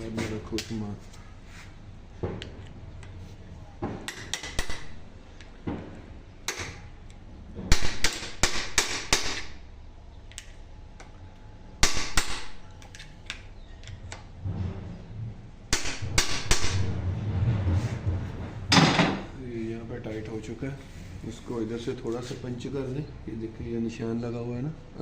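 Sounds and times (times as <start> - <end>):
hammer striking metal: 7.7 - 9.6, 11.8 - 12.6, 15.7 - 17.0.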